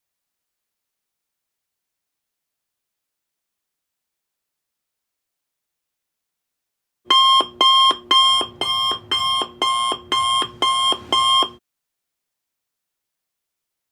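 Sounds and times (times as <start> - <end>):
alarm clock beeping: 7.1 - 11.6.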